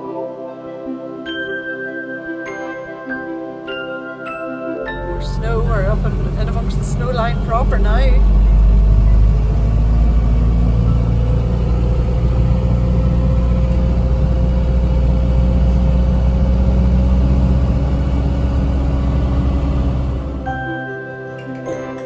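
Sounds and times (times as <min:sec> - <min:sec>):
thin rising whine: 0:05.0 - 0:20.5
truck engine drone: 0:05.0 - 0:20.7.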